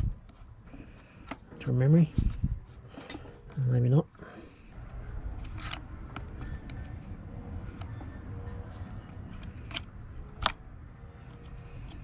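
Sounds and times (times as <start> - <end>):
plastic housing clicks: 5.4 - 12.0.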